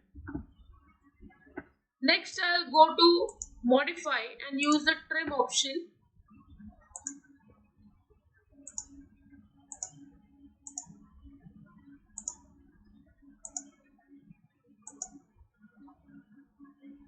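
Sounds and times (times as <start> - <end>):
faint steady hum: 0.0 - 17.0
mouse button clicking: 3.3 - 3.6, 7.0 - 7.2, 8.7 - 8.9, 12.2 - 12.4, 14.9 - 15.2.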